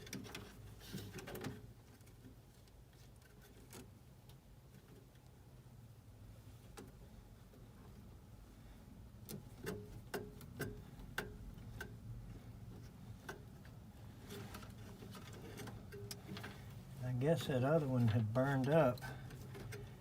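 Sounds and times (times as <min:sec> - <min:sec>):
low steady hum: 0:01.7 - 0:20.0.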